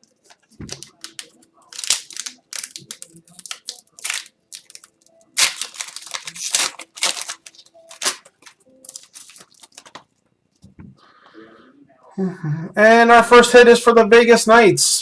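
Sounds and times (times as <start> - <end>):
card pack wrappers tearing: 0.0 - 10.1.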